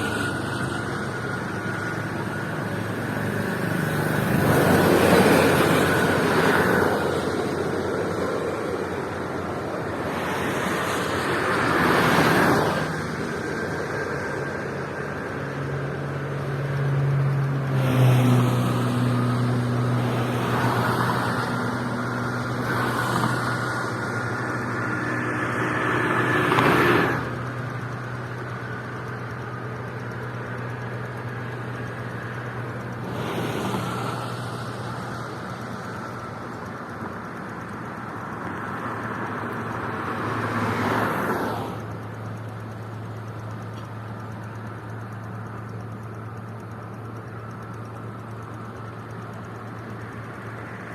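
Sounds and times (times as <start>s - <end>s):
steady low drone: 0.0s - 40.4s
cars and trucks passing: 0.0s - 50.9s.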